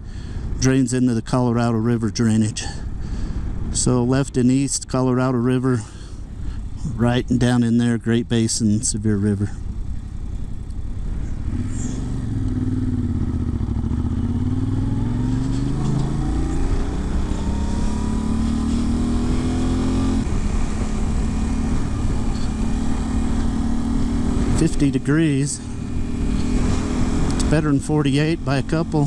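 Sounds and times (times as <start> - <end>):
motorcycle engine pulling: 9.4 - 29.0.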